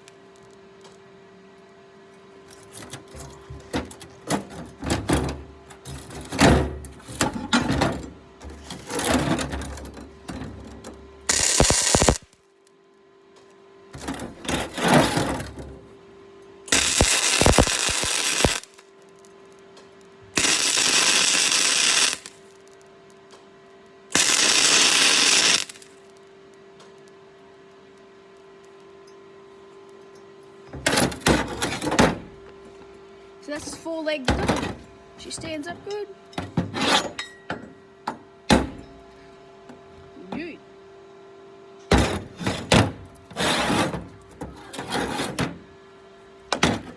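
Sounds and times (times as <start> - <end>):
steady hum: 5.3 - 12.4, 14.0 - 23.2
welder crackling: 11.2 - 12.4, 16.7 - 19.4, 20.3 - 22.9, 24.1 - 26.2.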